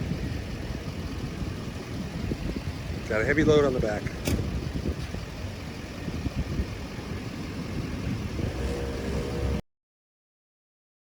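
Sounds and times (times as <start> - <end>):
pickup truck engine rumbling: 0.0 - 9.6
humming tone: 8.4 - 9.6.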